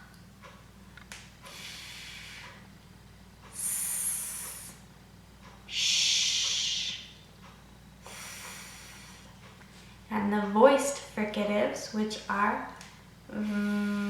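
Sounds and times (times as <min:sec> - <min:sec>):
woman making hissing speech sounds: 0:03.6 - 0:04.8, 0:05.7 - 0:07.1.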